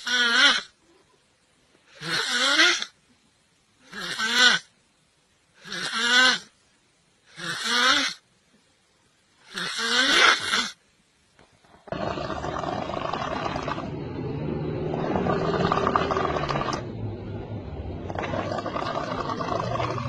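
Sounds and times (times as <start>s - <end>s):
person snoring loudly: 5.6s - 6.5s, 7.3s - 8.2s, 11.9s - 16.9s, 18.1s - 20.0s.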